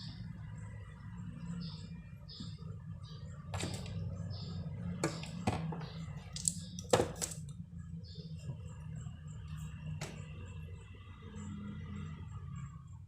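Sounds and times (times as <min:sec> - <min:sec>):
steady low hum: 0:00.0 - 0:13.0
objects clicking and knocking: 0:05.0 - 0:07.5.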